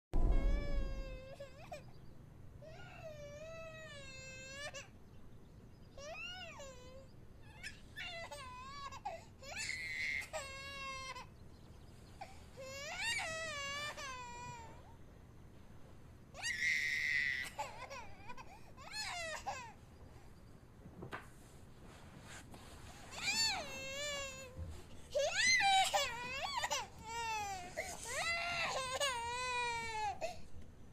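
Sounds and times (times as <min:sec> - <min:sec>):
baby crying: 0:00.2 - 0:01.8, 0:23.2 - 0:30.4.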